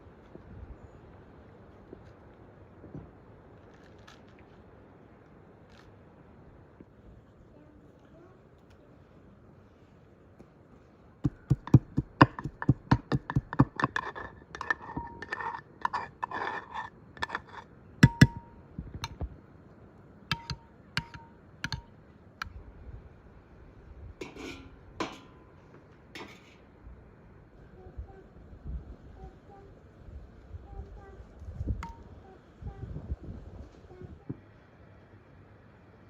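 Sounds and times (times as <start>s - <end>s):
dull scrapes: 11.3s - 18.5s
dishes and utensils clinking: 11.3s - 19.2s, 24.2s - 25.6s.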